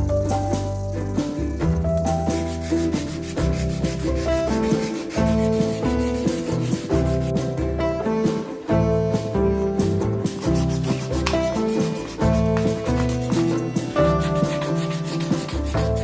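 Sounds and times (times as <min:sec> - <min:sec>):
music with bass and keyboard: 0:00.0 - 0:16.0
sanding strokes: 0:02.1 - 0:07.5, 0:10.3 - 0:16.0.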